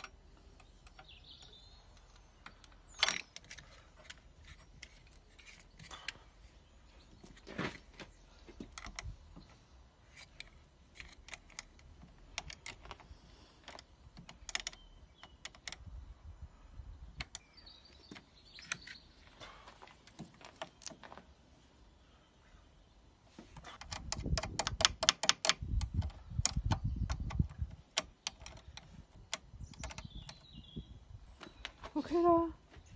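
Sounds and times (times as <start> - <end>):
hand tools clicking and tapping: 0.0 - 6.2, 8.5 - 9.5, 10.1 - 15.9, 17.1 - 19.0, 23.6 - 30.5.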